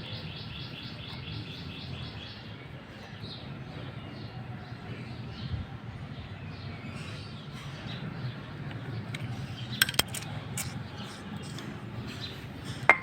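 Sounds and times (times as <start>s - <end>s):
birds chirping faintly: 0.0s - 13.0s
sharp small clicks: 8.7s - 11.7s.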